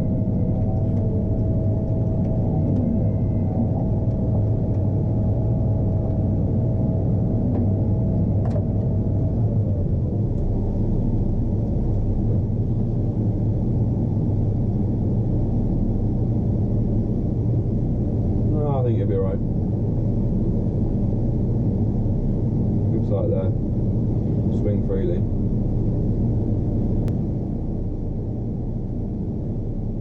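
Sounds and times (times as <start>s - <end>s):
thin whine: 0.0s - 13.3s
combine harvester engine droning: 0.0s - 30.0s.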